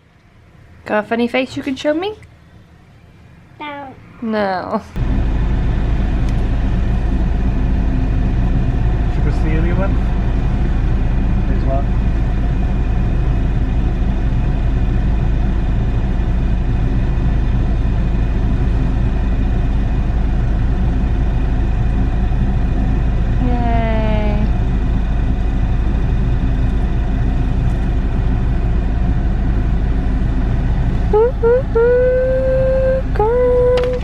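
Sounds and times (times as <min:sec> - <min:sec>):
car cabin rumble: 0:05.0 - 0:34.0
short falling vocal sound: 0:31.1 - 0:34.0.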